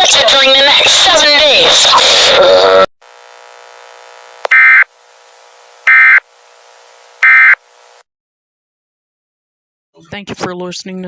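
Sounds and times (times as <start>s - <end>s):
faint steady buzz: 2.6s - 8.0s.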